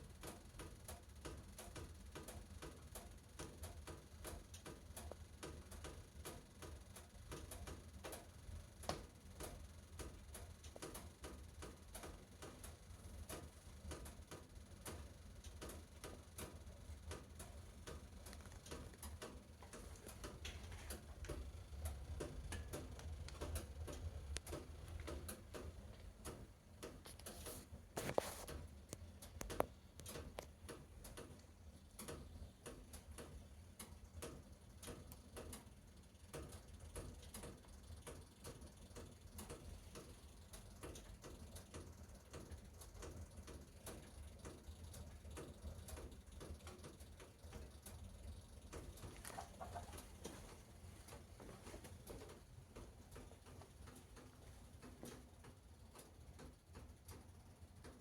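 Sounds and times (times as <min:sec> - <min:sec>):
low rumble of flame: 0:12.1 - 0:27.1.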